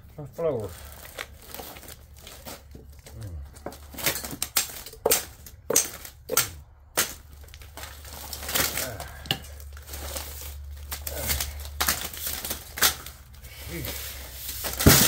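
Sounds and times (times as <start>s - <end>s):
paper rustling and crinkling: 0.4s - 5.0s, 7.2s - 15.0s
metal scrap clinking: 4.0s - 7.1s.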